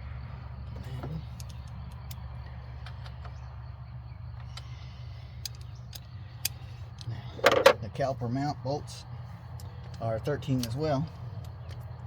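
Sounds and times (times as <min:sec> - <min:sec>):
steady low hum: 0:00.0 - 0:12.0
tools and brake parts clicking: 0:00.7 - 0:03.5, 0:04.3 - 0:07.8, 0:09.5 - 0:12.0.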